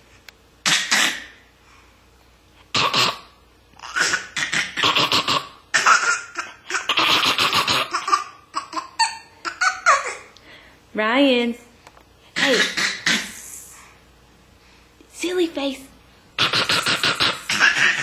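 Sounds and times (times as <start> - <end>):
baby fake coughing: 0.6 - 1.4, 2.7 - 10.4, 12.4 - 13.5, 16.4 - 18.0
baby laughing: 3.8 - 10.4, 12.4 - 13.4, 16.4 - 18.0.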